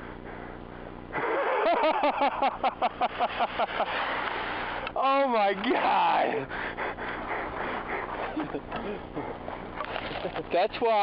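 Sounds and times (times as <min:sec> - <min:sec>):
fast rhythmic chatter: 0:05.2 - 0:11.0.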